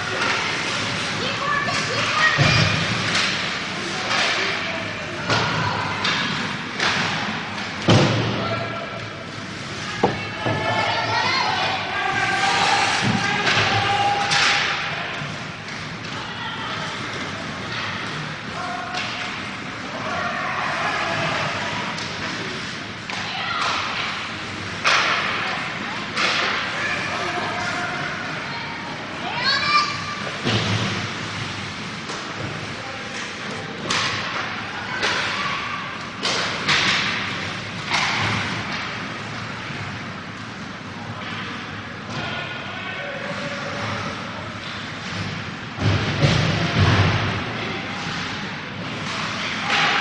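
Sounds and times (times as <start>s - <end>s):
puck hitting sticks and boards: 0.0s - 9.2s, 9.8s - 11.2s, 12.5s - 16.3s, 18.8s - 19.7s, 21.2s - 27.0s, 30.2s - 39.5s, 43.7s - 50.0s
murmur of spectators' voices: 0.0s - 50.0s.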